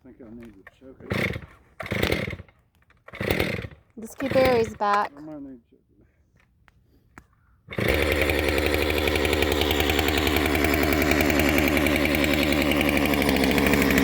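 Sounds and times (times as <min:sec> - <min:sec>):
chainsaw engine running: 0:01.0 - 0:02.5, 0:03.1 - 0:05.1, 0:07.7 - 0:14.0.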